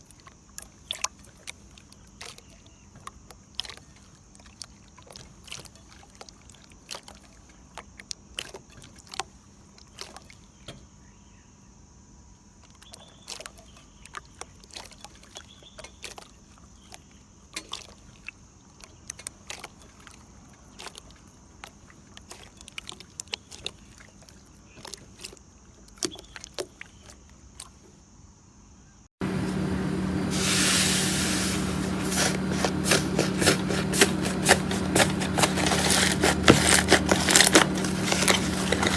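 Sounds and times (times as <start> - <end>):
slime crackling and crunching: 31.6 - 38.9.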